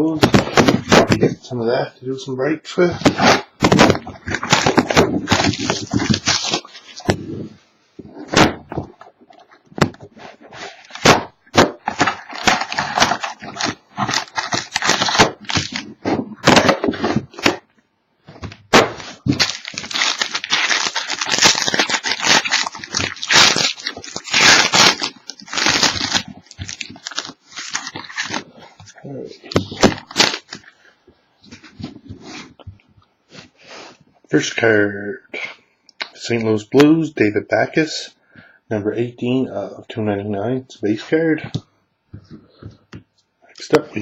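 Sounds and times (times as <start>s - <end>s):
cardboard being handled: 3.0s - 17.6s
plastic wrapping crinkling and tearing: 3.1s - 7.2s, 10.2s - 17.6s, 18.8s - 30.8s.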